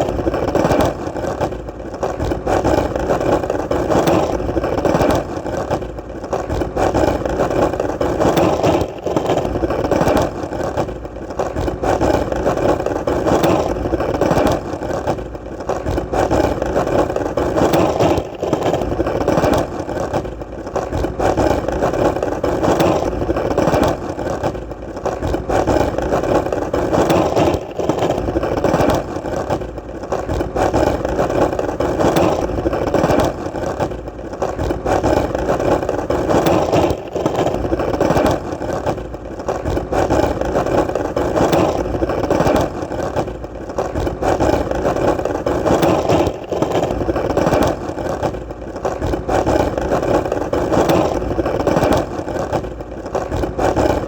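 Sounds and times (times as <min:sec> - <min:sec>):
skateboard wheels rolling: 0:00.0 - 0:54.0.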